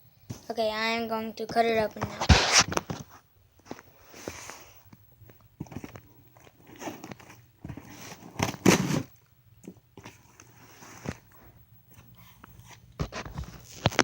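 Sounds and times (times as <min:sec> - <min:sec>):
packing scraping and crunching: 0:01.6 - 0:14.0
box being cut open: 0:02.2 - 0:02.8, 0:06.7 - 0:09.1.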